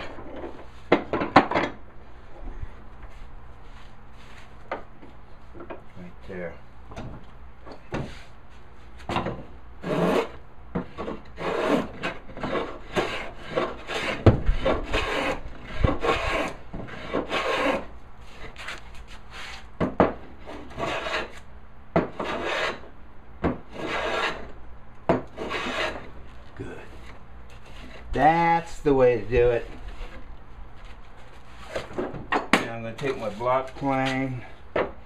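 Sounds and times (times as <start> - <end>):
hand plane rasping strokes: 9.8 - 19.7, 20.3 - 21.4, 22.0 - 22.9, 23.7 - 24.5, 25.3 - 26.2, 26.9 - 28.1.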